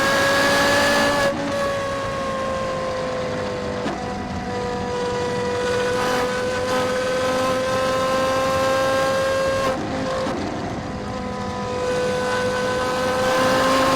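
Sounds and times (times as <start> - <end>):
sports car accelerating hard: 0.0 - 13.9.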